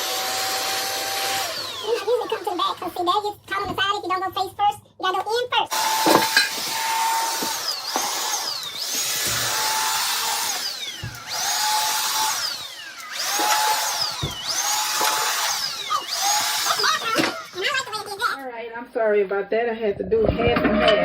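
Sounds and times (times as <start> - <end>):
vacuum mop motor whining: 0.0 - 3.2, 5.7 - 18.4.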